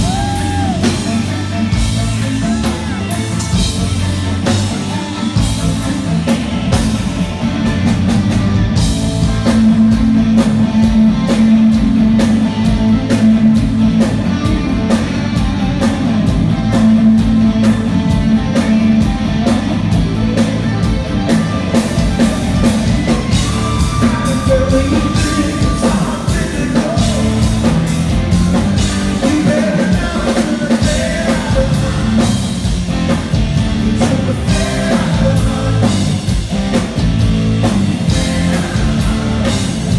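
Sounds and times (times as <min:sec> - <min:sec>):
person singing: 0:00.0 - 0:06.4, 0:22.9 - 0:27.9, 0:28.8 - 0:32.5, 0:33.9 - 0:36.3
drum kit: 0:00.0 - 0:39.9
electric guitar: 0:00.0 - 0:39.9.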